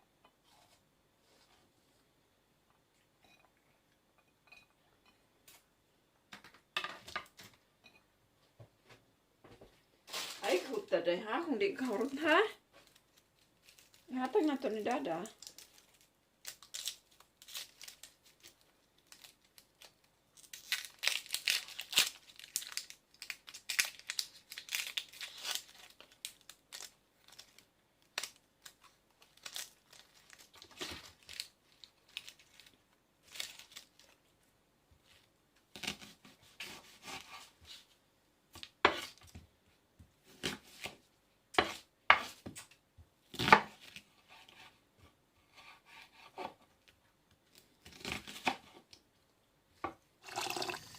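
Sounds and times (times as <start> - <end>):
tearing and crinkling handling noises: 10.0 - 10.9, 11.6 - 38.0.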